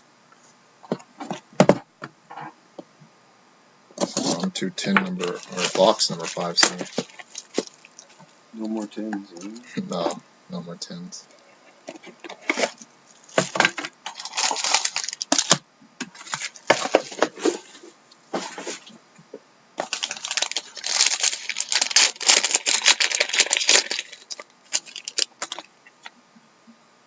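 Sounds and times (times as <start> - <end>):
plastic shrink wrap crinkling and tearing: 4.0 - 8.2, 11.9 - 17.7, 19.8 - 26.0.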